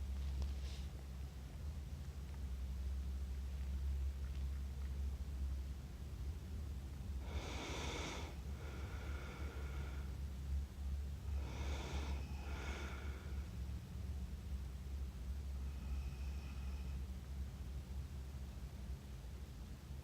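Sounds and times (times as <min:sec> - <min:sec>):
person snoring: 0:07.2 - 0:10.1, 0:11.3 - 0:13.4.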